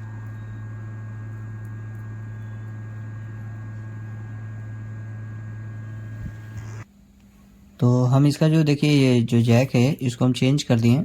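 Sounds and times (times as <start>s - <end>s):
electrical hum: 0.0s - 11.0s.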